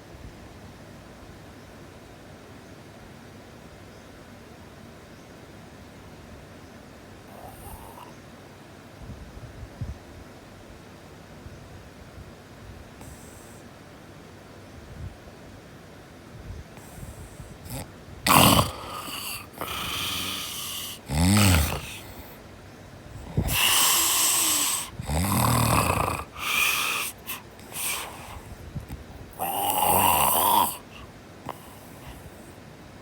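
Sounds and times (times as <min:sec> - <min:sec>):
person snoring: 0:07.3 - 0:08.1, 0:17.6 - 0:22.4, 0:23.2 - 0:28.6, 0:29.3 - 0:32.6
snorts: 0:07.3 - 0:08.2, 0:13.0 - 0:13.6, 0:16.8 - 0:22.4, 0:23.1 - 0:32.6.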